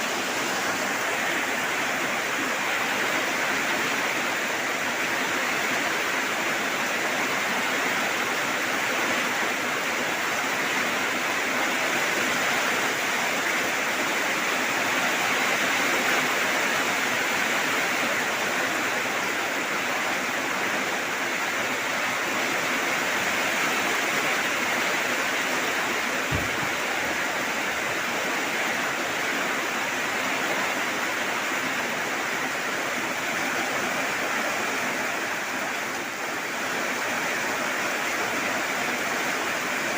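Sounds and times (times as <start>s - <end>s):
heavy rain falling: 0.0s - 39.9s
brief low thump: 26.3s - 26.8s.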